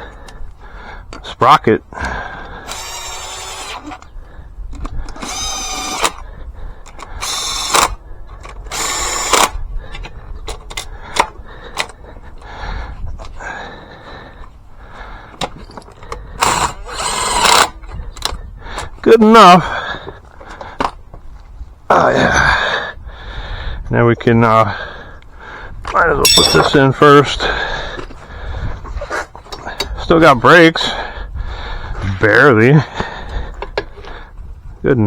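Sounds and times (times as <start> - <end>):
cordless drill running: 2.6 - 4.0, 5.1 - 6.2, 7.2 - 8.0, 8.7 - 9.6, 16.4 - 17.8.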